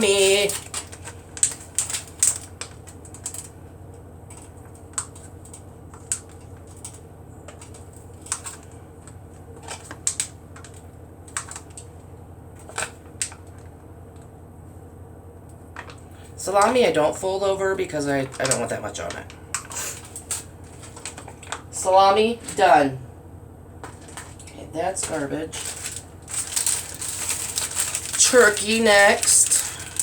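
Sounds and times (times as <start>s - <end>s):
steady low hum: 0.0s - 30.0s
packaging handled: 23.8s - 30.0s.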